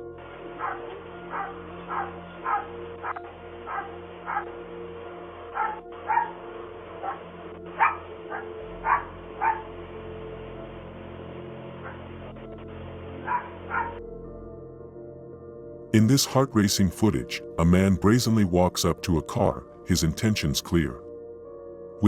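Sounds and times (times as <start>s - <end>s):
dog barking: 0.6s - 4.6s, 5.5s - 6.4s, 7.0s - 9.7s, 11.8s - 12.0s, 13.2s - 14.0s.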